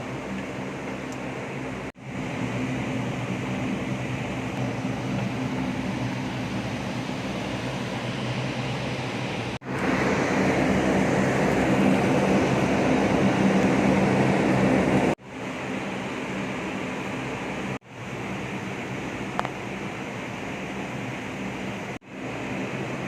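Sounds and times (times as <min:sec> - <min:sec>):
mechanical drone with low hum: 0:00.0 - 0:23.0.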